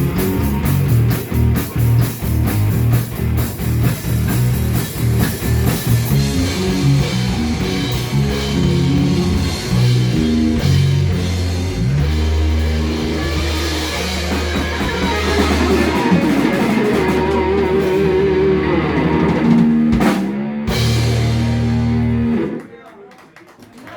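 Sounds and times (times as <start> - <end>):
live rock band playing: 0.0 - 22.6.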